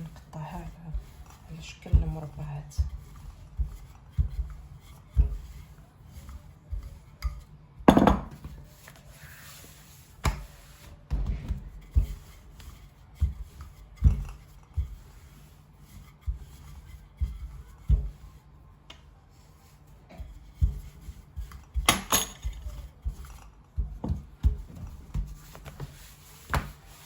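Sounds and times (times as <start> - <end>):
soft thumps of dough: 0.0 - 27.0
utensil knocking on surface: 7.9 - 8.5.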